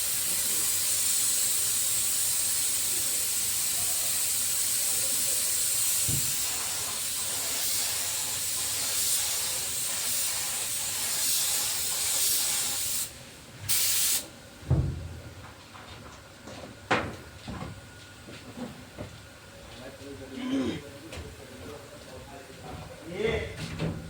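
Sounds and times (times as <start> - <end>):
spray gun hissing: 0.0 - 14.3
dull thump: 14.6 - 15.2.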